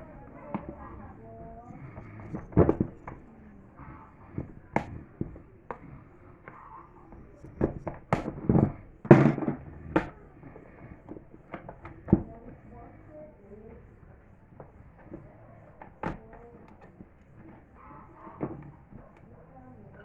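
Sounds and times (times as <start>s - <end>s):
hard objects knocking and clattering: 0.0s - 12.6s.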